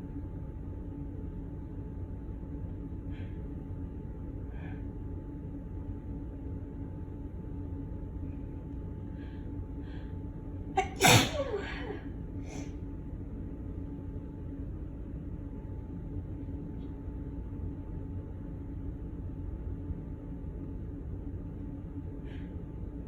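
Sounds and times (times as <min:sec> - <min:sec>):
woman sneezing: 0:10.8 - 0:12.7.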